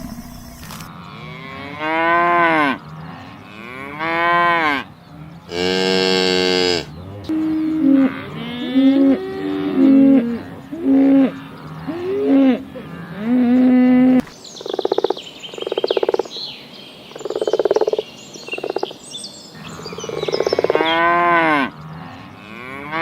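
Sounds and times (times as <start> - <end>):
cattle mooing: 0.9 - 14.2, 20.7 - 23.0.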